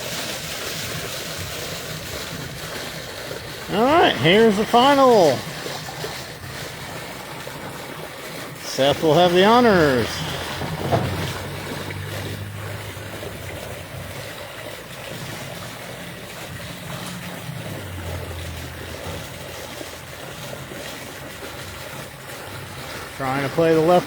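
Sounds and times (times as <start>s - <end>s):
low steady motor hum: 0.0s - 24.0s.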